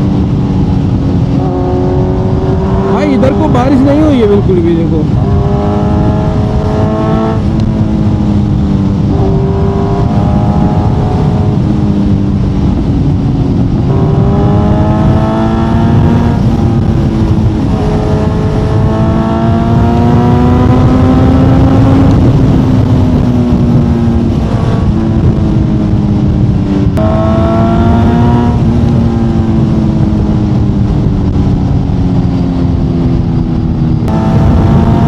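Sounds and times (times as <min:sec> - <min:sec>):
motorcycle engine accelerating: 0:00.0 - 0:35.0.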